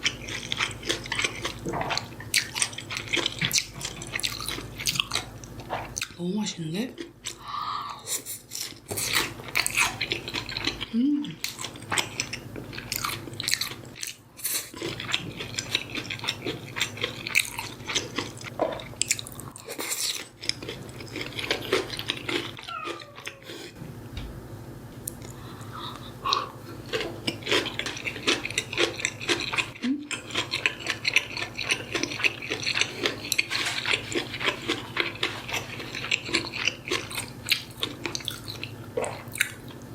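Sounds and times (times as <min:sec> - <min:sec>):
chewing and crunching food: 0:00.0 - 0:23.8, 0:25.0 - 0:39.9
person humming: 0:10.9 - 0:11.4.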